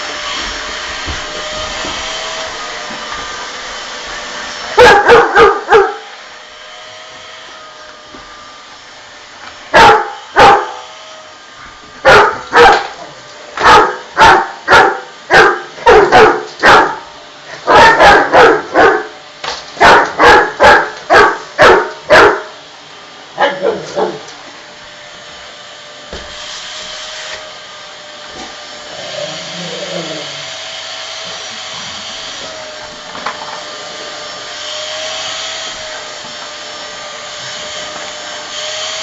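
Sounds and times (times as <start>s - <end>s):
vacuum cleaner whine: 0.0s - 39.0s
dog barking: 4.7s - 6.0s, 9.7s - 10.8s, 12.0s - 19.1s, 19.8s - 22.6s, 23.4s - 24.2s.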